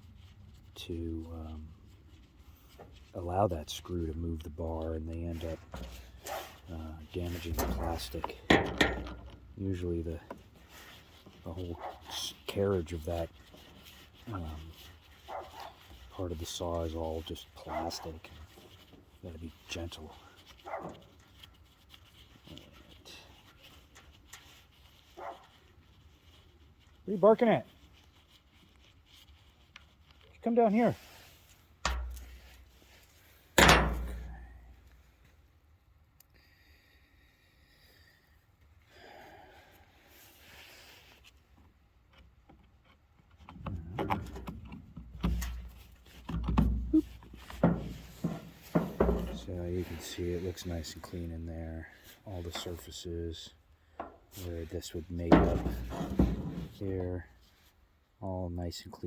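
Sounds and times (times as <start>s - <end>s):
chainsaw parts knocking and clicking: 7.6s - 9.5s, 31.8s - 32.6s
faint dog barking: 15.2s - 15.8s, 25.1s - 25.5s.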